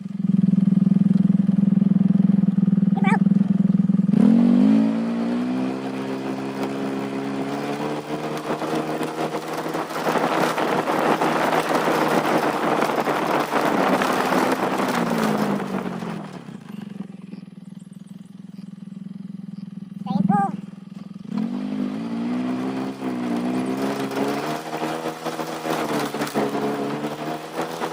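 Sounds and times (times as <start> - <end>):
vehicle engine revving: 0.0 - 27.9.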